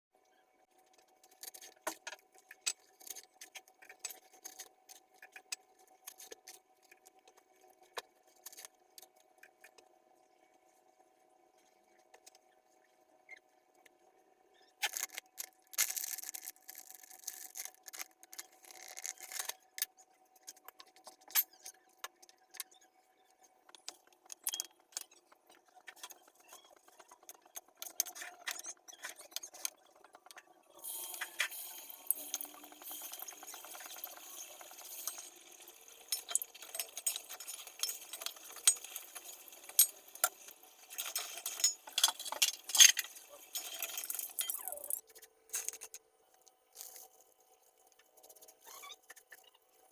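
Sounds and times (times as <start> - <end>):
kitchen utensils clicking: 30.8 - 46.0.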